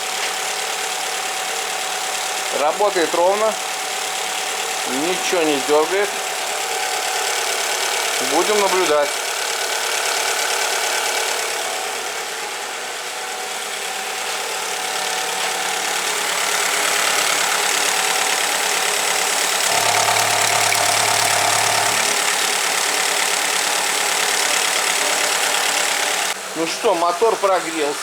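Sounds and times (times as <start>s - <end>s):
car engine idling: 16.3s - 26.3s
steady low hum: 19.7s - 22.2s.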